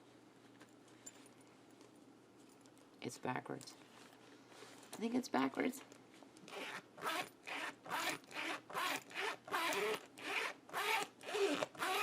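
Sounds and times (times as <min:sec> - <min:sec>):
zipper rasping back and forth: 0:06.5 - 0:12.0.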